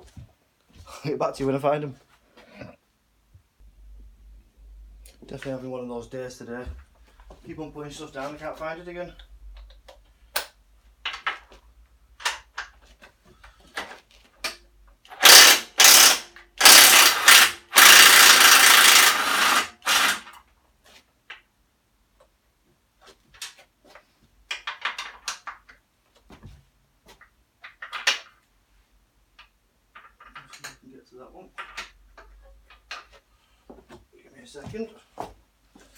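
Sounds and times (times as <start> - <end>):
power tool undoing bolts: 14.5 - 20.4.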